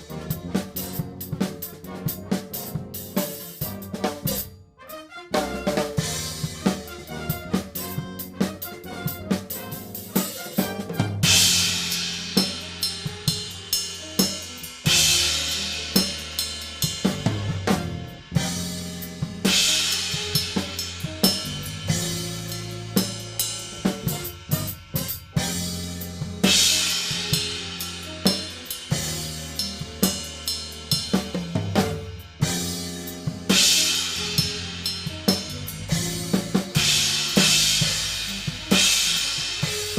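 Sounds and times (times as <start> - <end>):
drum kit playing: 0.0 - 39.9.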